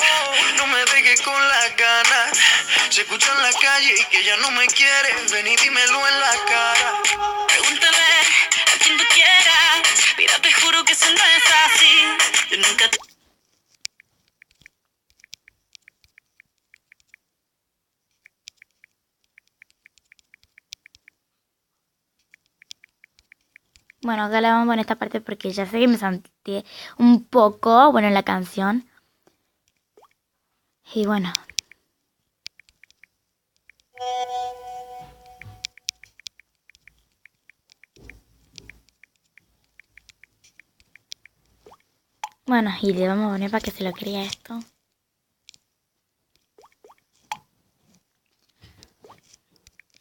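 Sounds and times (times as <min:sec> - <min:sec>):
keyboard typing clicks: 0:13.8 - 0:17.2, 0:18.1 - 0:21.2, 0:22.2 - 0:24.1, 0:35.2 - 0:42.4.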